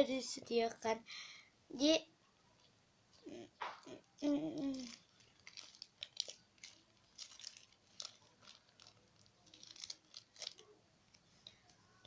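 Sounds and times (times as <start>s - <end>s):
plastic packaging crinkling: 4.6s - 12.0s.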